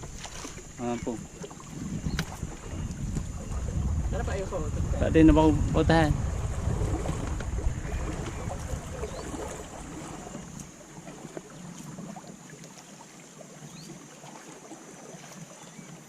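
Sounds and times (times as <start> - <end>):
wind rumble on microphone: 0.0 - 10.7.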